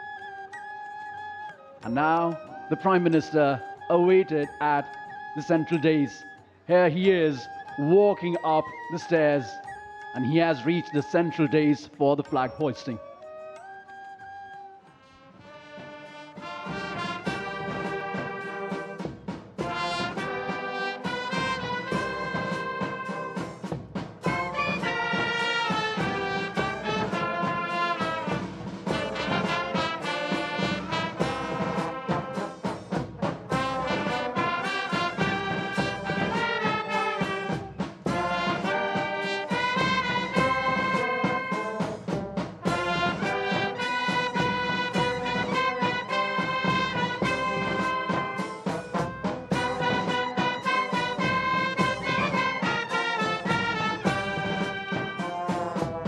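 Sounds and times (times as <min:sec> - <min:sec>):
brass band playing: 0:15.0 - 0:56.0.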